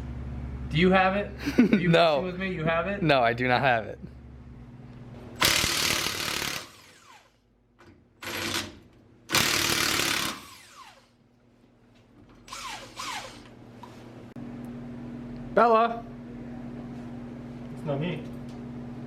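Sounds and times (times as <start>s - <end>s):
impact wrench bursts: 5.4s - 7.4s, 8.2s - 11.2s, 12.4s - 13.6s.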